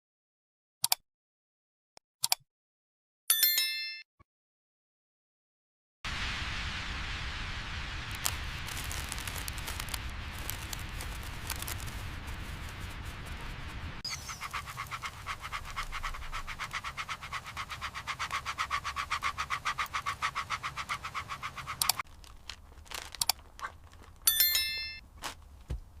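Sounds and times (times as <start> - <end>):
dog panting rapidly: 14.4 - 22.0
bright chime: 24.3 - 25.0.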